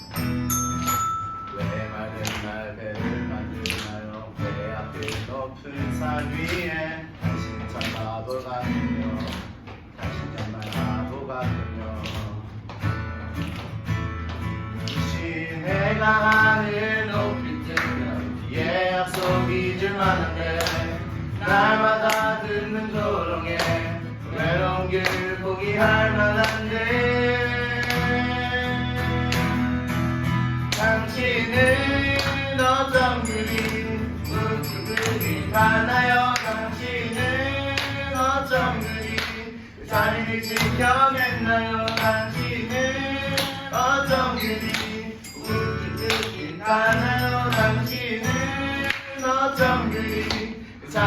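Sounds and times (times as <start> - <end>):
steady percussive beat: 0.0 - 3.3, 30.8 - 50.6
instrumental accompaniment: 0.0 - 4.4, 15.8 - 51.0
men singing worship song: 15.1 - 29.3, 30.8 - 51.0.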